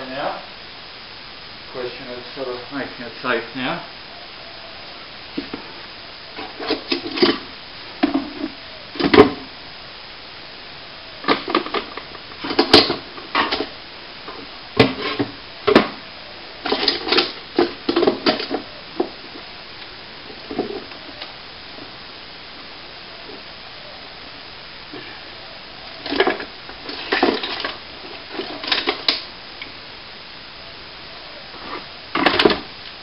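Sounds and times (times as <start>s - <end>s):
clatter of hard objects: 16.6s - 19.1s, 26.0s - 29.2s.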